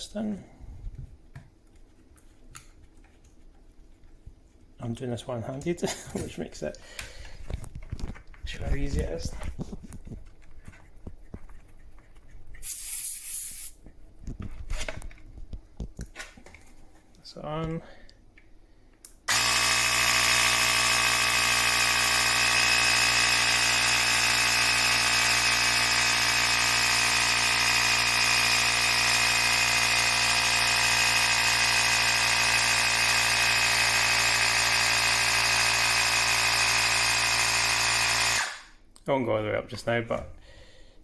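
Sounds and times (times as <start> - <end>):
electric tyre inflator pumping air: 19.3 - 38.7.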